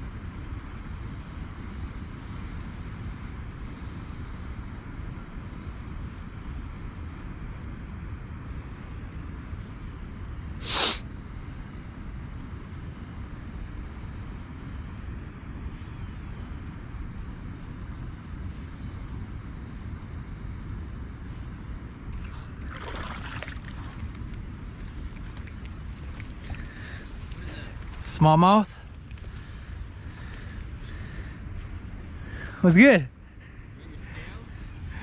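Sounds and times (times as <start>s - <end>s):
low wind rumble on microphone: 0.0s - 35.0s
rushing splashy water: 22.1s - 27.4s.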